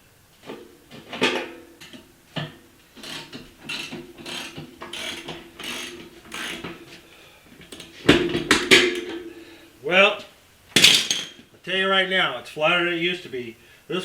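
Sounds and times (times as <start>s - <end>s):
hand ratchet rasping: 3.0s - 6.9s.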